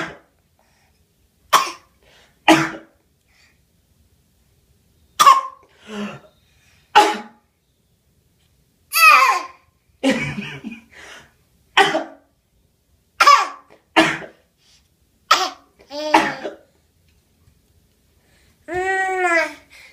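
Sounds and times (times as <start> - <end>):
baby fake coughing: 1.5 - 1.9, 2.5 - 2.9, 5.2 - 6.3, 7.0 - 7.4, 11.8 - 12.2, 13.2 - 14.4, 15.3 - 16.7
baby vocal sound: 8.9 - 9.6, 18.7 - 19.9.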